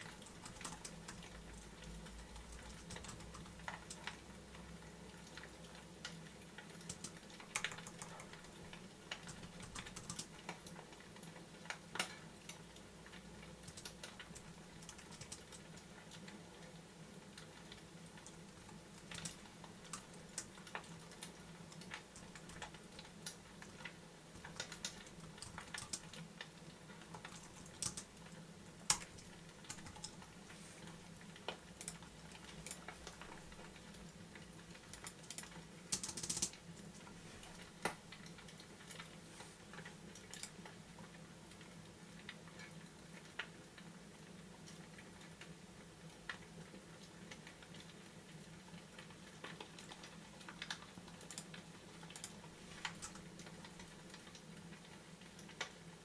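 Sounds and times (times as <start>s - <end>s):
light clicks and ticks: 0.0s - 16.7s, 17.4s - 43.9s, 48.8s - 55.9s.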